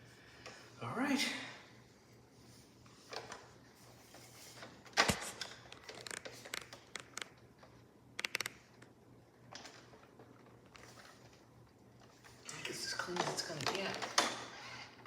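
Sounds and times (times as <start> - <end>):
small clicks and scratches: 3.0 - 11.4.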